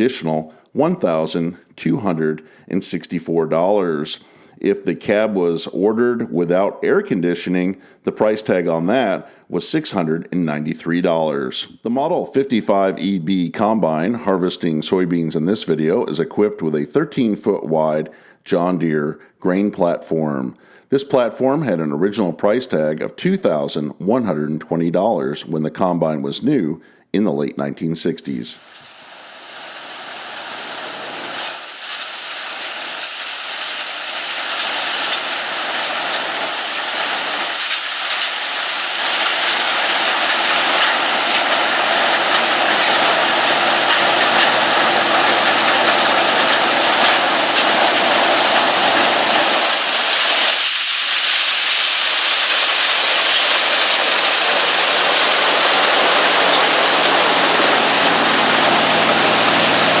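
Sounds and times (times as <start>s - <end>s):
combine harvester running: 28.6s - 50.6s, 52.6s - 60.0s.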